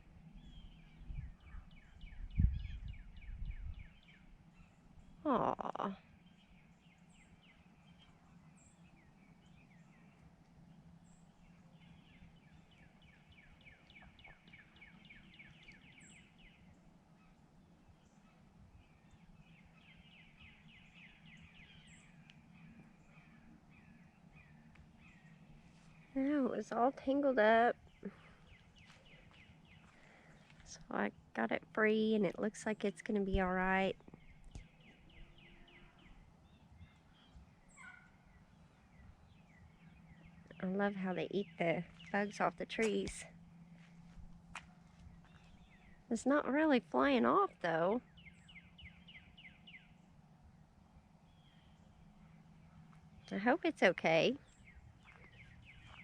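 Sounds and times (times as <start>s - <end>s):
songbird singing: 0.0s - 56.0s
steady low hum: 0.0s - 56.0s
faint high bird chirps: 0.3s - 26.6s, 33.3s - 43.3s, 51.2s - 56.0s.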